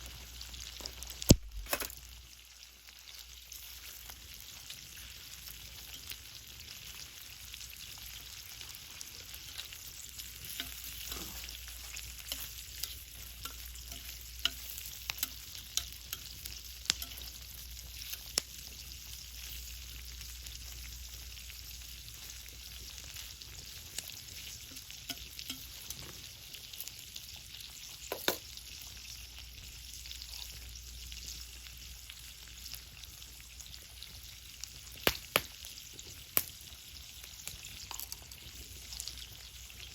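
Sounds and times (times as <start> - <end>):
fire crackles and pops: 0.0 - 2.3, 7.7 - 27.0, 32.7 - 39.9
food sizzling over fire: 0.0 - 39.9.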